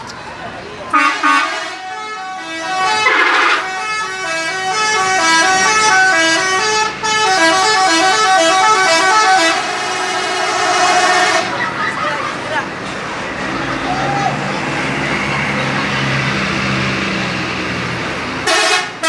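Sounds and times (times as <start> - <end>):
musical air horns playing a tune: 0.9 - 11.6, 18.4 - 19.0.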